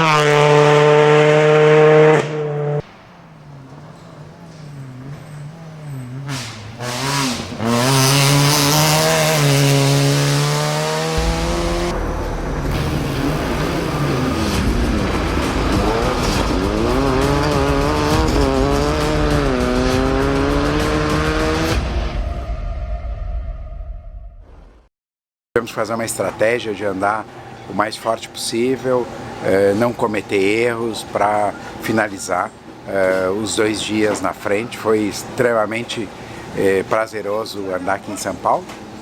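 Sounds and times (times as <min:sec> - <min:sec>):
rally car engine revving: 0:00.0 - 0:22.0.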